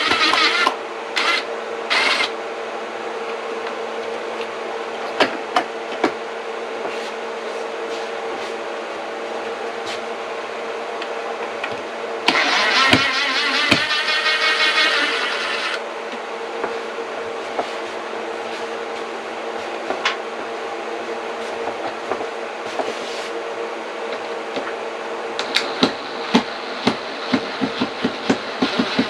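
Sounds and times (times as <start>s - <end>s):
power tool cutting wood: 0.0s - 2.4s, 12.3s - 15.8s.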